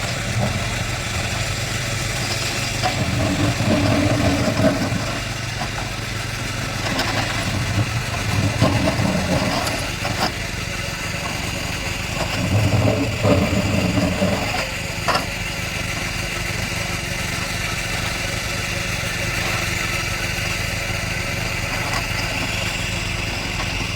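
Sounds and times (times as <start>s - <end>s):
diesel engine running: 0.0s - 23.9s.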